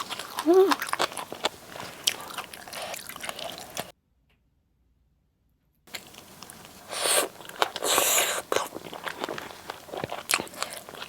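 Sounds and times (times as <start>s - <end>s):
wet chewing of noodles: 0.0s - 3.9s, 5.9s - 11.0s
small mouth clicks: 5.9s - 11.0s.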